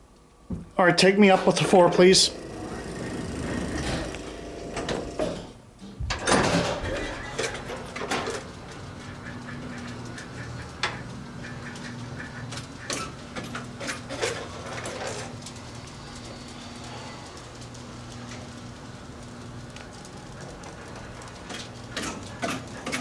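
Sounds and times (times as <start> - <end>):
elevator humming: 0.0 - 23.0
elevator knocks and rattles: 2.8 - 9.2.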